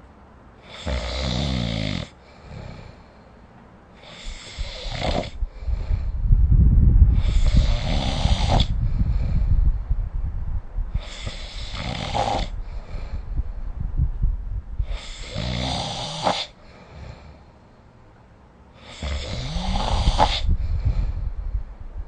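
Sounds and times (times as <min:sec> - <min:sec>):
person snoring with rattle: 0:00.6 - 0:03.0, 0:04.0 - 0:06.1, 0:07.2 - 0:09.5, 0:11.0 - 0:13.2, 0:14.8 - 0:17.4, 0:18.8 - 0:21.2.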